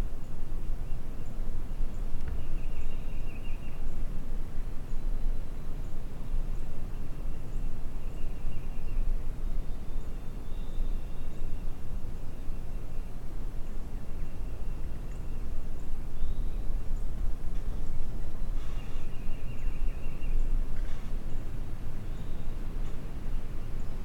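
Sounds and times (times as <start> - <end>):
faint whistled bird calls: 18.5 - 21.4.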